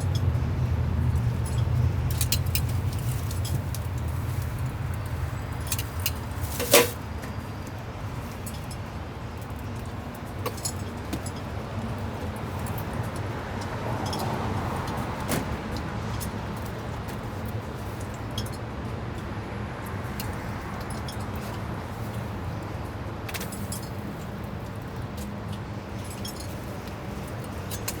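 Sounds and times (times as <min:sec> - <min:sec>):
utensils clinking: 0:05.6 - 0:07.0.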